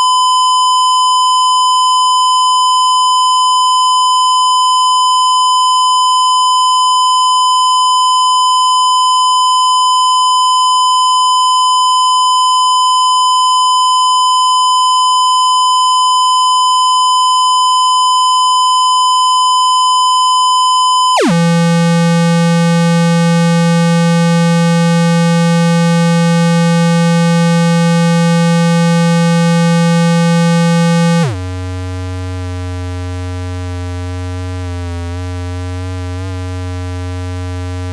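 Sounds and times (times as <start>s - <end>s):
low buzzy tone: 21.2s - 31.4s
steady electronic tone: 21.2s - 31.4s.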